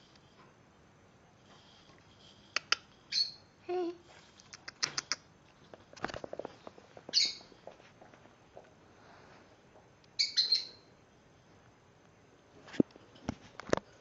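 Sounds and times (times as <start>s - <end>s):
light tapping and scrabbling: 4.8s - 8.7s.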